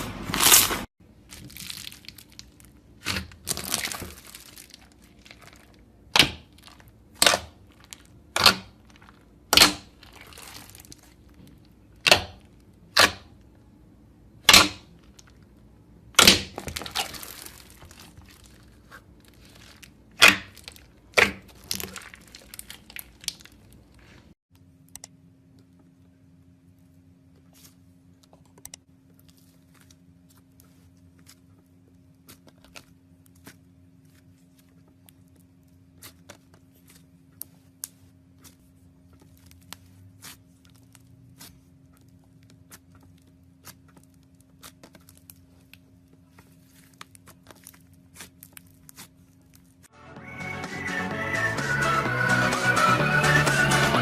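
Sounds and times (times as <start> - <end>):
slime squeezed and popping: 16.2 - 23.8.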